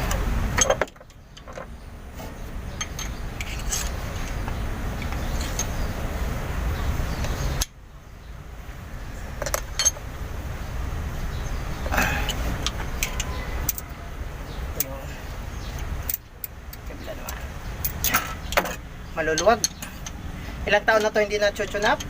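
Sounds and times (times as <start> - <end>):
metallic clicks of hand tools: 12.3 - 13.8.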